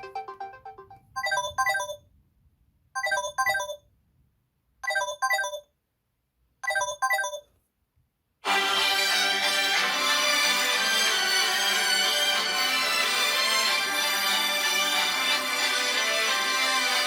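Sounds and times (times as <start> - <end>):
phone ringtone chimes: 0.0 - 2.1, 3.0 - 3.8, 4.8 - 5.7, 6.6 - 7.5
ringtone melody: 0.0 - 2.1, 3.0 - 3.8, 4.8 - 5.7, 6.6 - 7.4.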